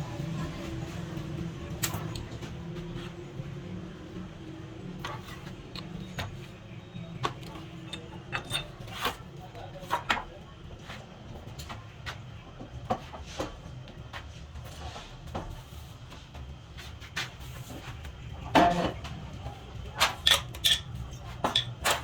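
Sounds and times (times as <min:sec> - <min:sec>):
low machine hum: 0:00.0 - 0:12.8
small parts clicking and knocking: 0:07.2 - 0:09.2, 0:20.0 - 0:22.0.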